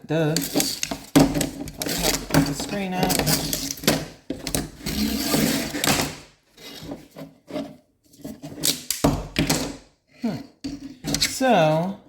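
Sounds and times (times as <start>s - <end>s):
screen mesh scraping and rustling: 0.3s - 8.8s
frame knocks and clicks: 0.4s - 4.9s, 8.9s - 9.8s.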